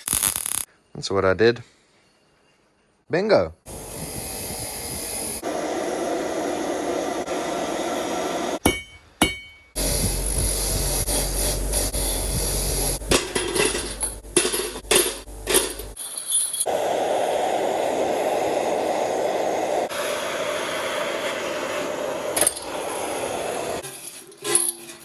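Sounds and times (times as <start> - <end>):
workshop noise: 3.7 - 25.0
hammer strikes on steel: 8.6 - 9.8.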